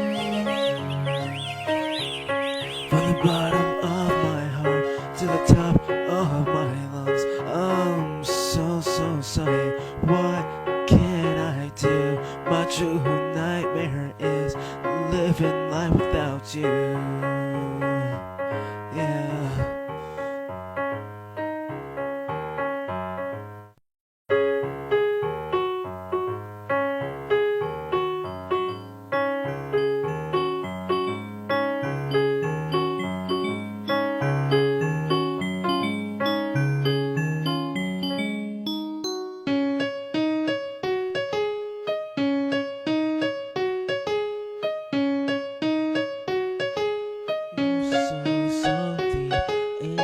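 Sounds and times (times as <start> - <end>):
keyboard playing repeated chords: 0.0 - 16.6, 20.7 - 50.0.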